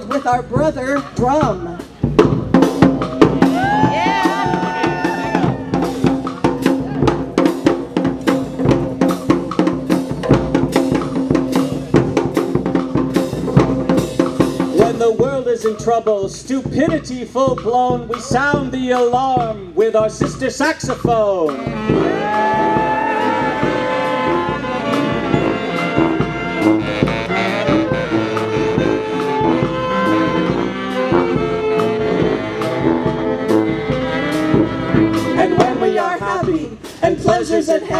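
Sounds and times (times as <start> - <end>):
bass drum and snare beat: 0.0 - 37.9
brass street band playing: 0.0 - 37.9
held pitched instrument notes: 21.5 - 37.7
saxophone melody: 21.6 - 36.6.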